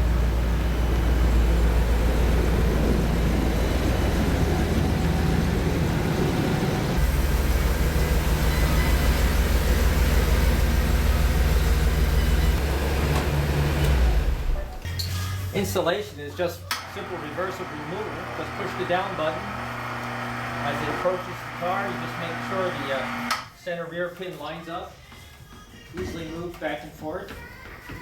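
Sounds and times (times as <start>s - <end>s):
motor humming: 0.0s - 14.9s, 16.6s - 23.4s.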